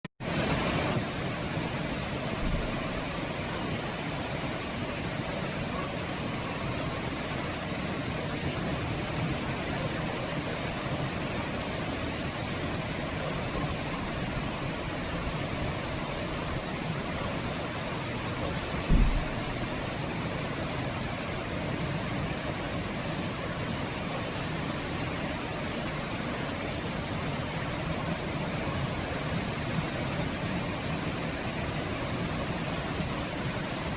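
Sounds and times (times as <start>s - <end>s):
heavy rain: 0.2s - 33.9s
brief low thump: 2.4s - 2.8s, 18.8s - 19.7s.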